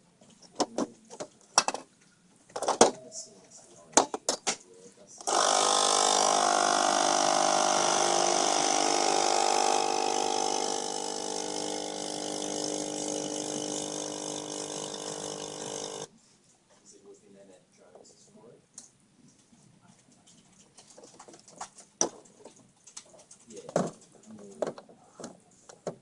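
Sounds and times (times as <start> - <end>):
coffee machine pump buzzing: 5.2 - 16.1.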